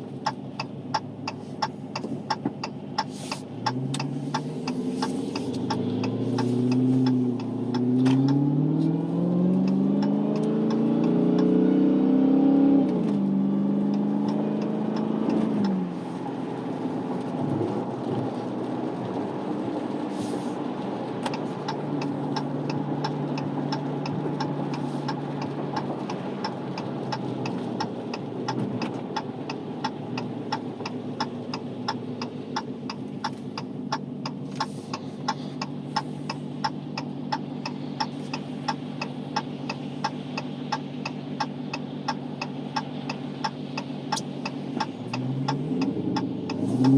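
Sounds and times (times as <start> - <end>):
regular ticking: 0.0 - 11.5, 21.2 - 46.9
car engine accelerating: 0.0 - 46.9.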